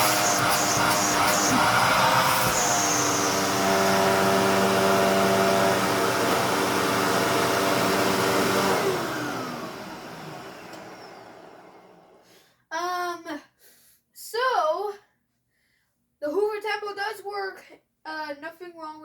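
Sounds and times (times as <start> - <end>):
vacuum cleaner running: 0.0 - 12.3
vacuum motor winding down: 0.0 - 12.3.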